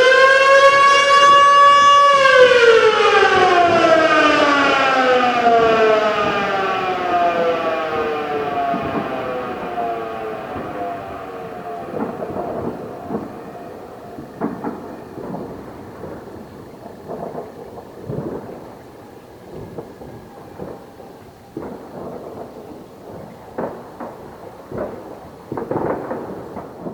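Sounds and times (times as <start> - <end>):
siren falling tone: 0.0 - 16.5
fireworks booming and popping: 0.0 - 26.9.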